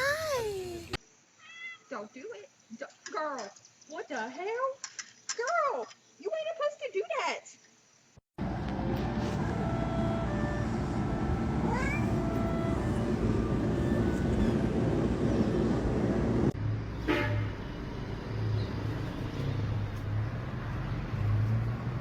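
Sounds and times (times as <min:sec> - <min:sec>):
cat meowing: 0:01.4 - 0:01.9, 0:11.7 - 0:13.0
road traffic rumble: 0:08.4 - 0:22.0.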